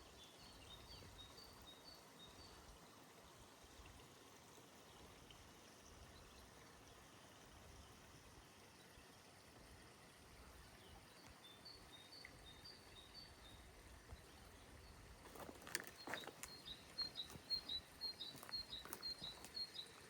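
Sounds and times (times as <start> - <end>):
small bird singing: 10.8 - 20.0
footsteps: 15.2 - 19.6.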